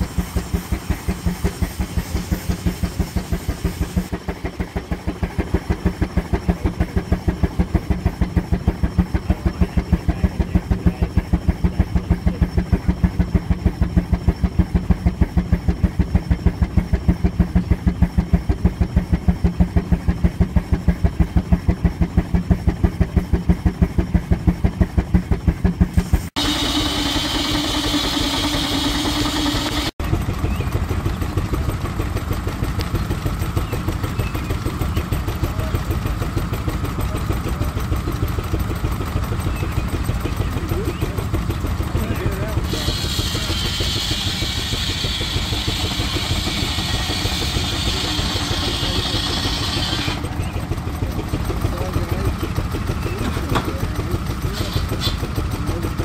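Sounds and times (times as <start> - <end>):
steam hiss: 0.0 - 4.2, 42.6 - 50.2
steam engine exhaust puffing: 0.0 - 56.0.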